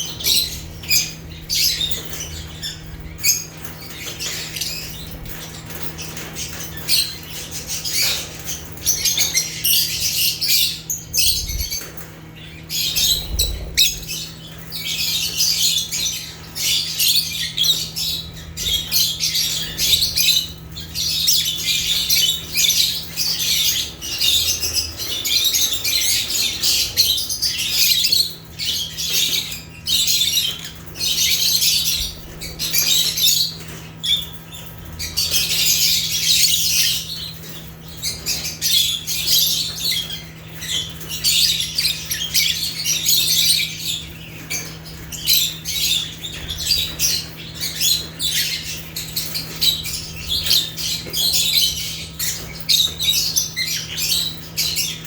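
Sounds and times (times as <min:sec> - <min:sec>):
lovebirds chattering and squawking: 0:00.0 - 0:55.0.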